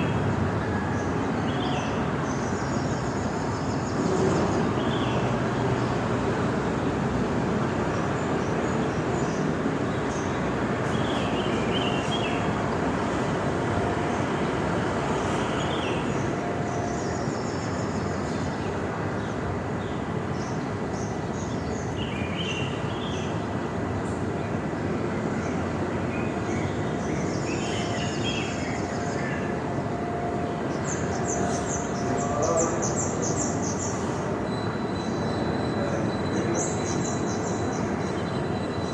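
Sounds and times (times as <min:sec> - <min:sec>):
birds chirping: 0:07.8 - 0:38.9.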